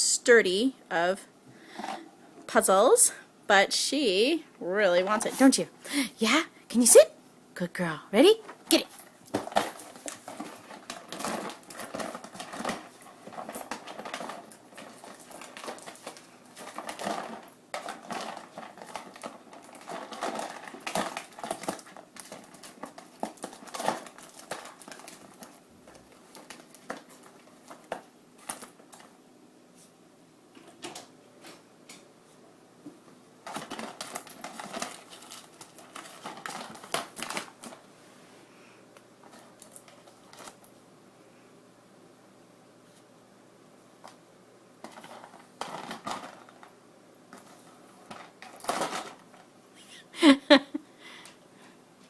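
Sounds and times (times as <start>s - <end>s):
cardboard crinkling and crackling: 8.5s - 29.1s, 33.4s - 37.9s, 39.2s - 40.7s, 44.8s - 49.5s.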